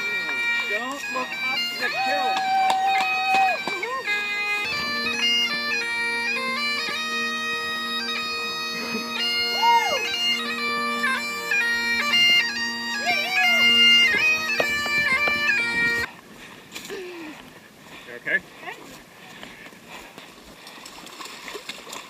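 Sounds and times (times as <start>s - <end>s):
bagpipes playing: 0.0s - 16.2s.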